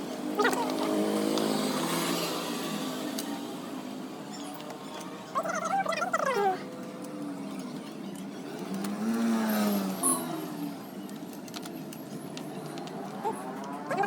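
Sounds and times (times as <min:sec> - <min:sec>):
traffic: 0:00.0 - 0:14.0
workshop background noise: 0:00.0 - 0:14.0
vehicle engine revving: 0:08.4 - 0:11.2, 0:11.8 - 0:14.0.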